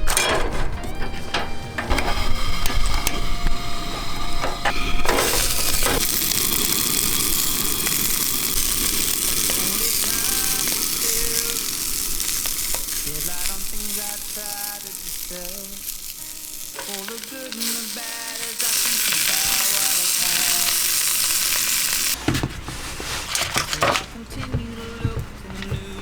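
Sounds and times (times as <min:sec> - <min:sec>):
knocks and clicks: 0:00.0 - 0:05.2
faint musical notes: 0:00.0 - 0:06.1
food sizzling on barbecue plate: 0:01.6 - 0:22.2.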